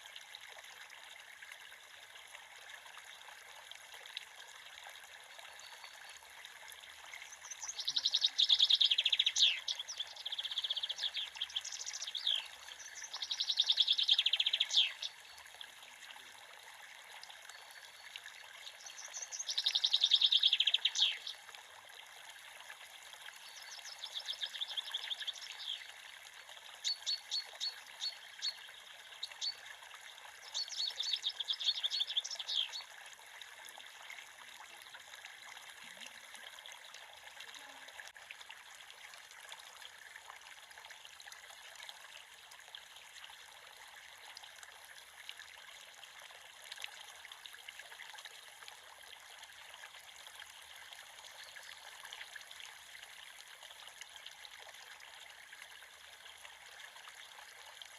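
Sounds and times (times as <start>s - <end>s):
creek running water: 0.0s - 57.9s
songbird trilling: 7.6s - 15.1s, 18.9s - 21.3s.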